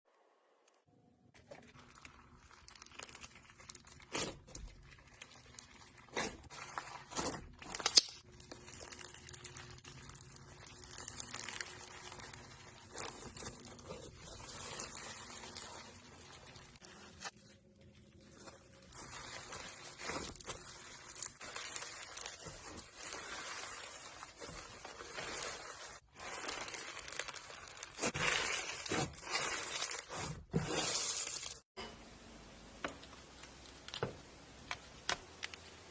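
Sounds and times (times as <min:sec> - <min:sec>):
slime crackling and popping: 0:01.7 - 0:17.3, 0:18.2 - 0:30.4.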